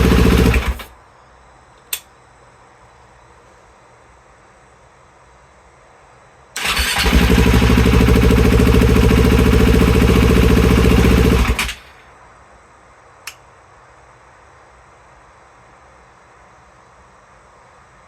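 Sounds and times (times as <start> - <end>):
engine turning over on starter: 0.0 - 0.9, 6.6 - 11.9.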